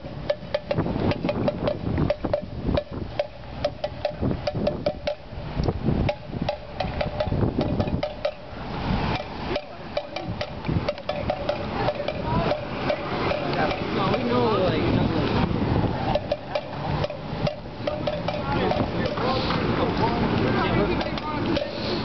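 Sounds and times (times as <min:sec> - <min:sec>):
noisemakers clattering with metallic ring: 0:00.0 - 0:22.0.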